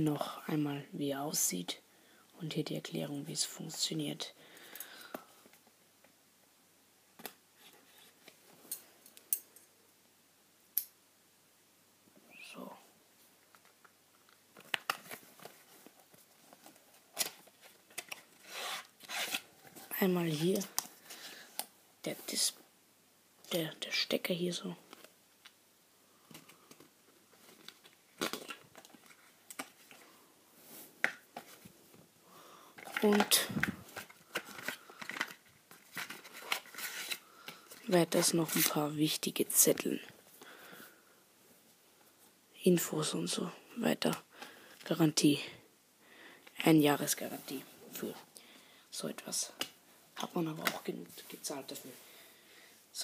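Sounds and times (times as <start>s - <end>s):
packaging rustling: 26.3s - 30.1s, 32.8s - 38.8s.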